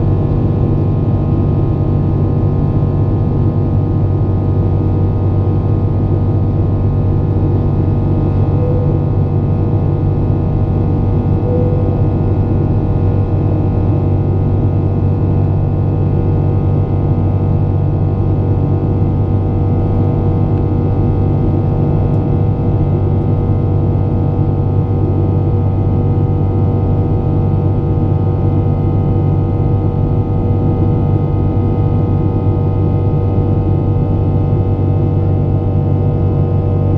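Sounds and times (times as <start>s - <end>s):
aircraft engines droning: 5.9s - 25.0s.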